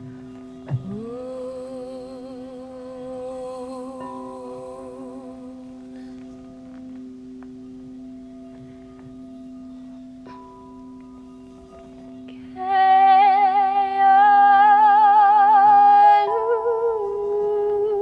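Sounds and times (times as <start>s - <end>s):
singing bowls ringing: 0.0s - 18.0s
person singing wordless notes: 0.7s - 6.3s, 12.3s - 18.0s.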